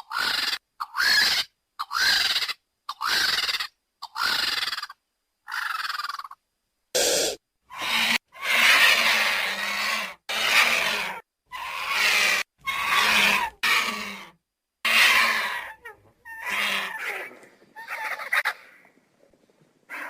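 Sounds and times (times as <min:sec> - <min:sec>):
vulture harsh hoarse calls: 0:07.0 - 0:18.8.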